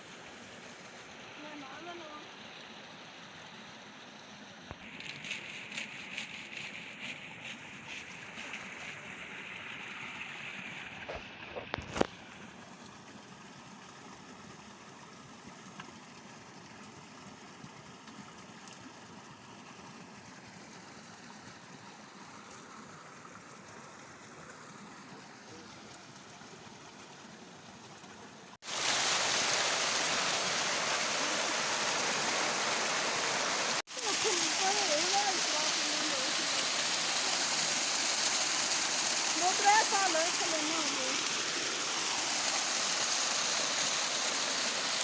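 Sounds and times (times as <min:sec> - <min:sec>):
stream water flowing: 0:00.0 - 0:45.0
loud rushing water: 0:28.5 - 0:45.0.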